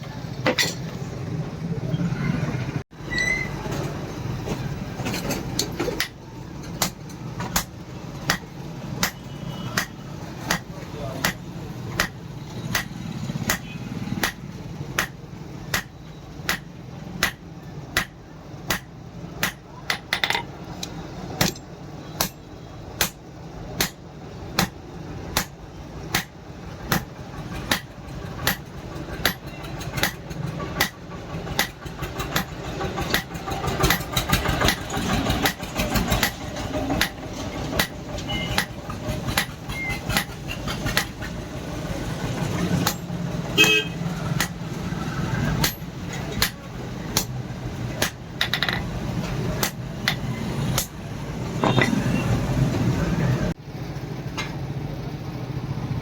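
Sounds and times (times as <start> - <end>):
hammer striking steel: 6.0 - 20.4, 21.4 - 22.4, 45.5 - 47.4, 49.6 - 52.2.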